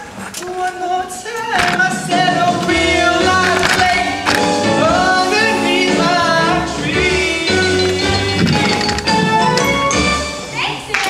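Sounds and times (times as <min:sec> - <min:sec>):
vocal group singing held notes: 0:01.6 - 0:09.4
instrumental accompaniment with bass line: 0:01.7 - 0:10.6.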